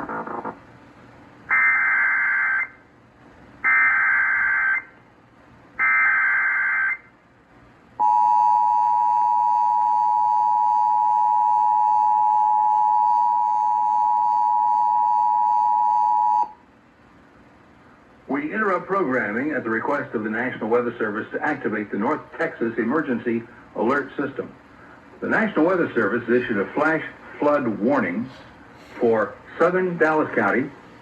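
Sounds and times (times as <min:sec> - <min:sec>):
buzzy data bursts: 0:00.0 - 0:00.6.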